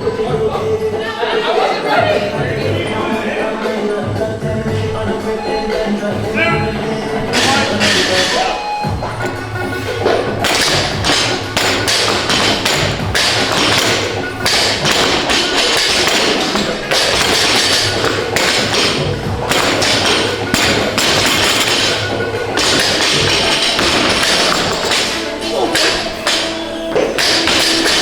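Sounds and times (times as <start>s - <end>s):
loud gym music: 0.0s - 28.0s
barbells thudding on floor: 7.0s - 28.0s.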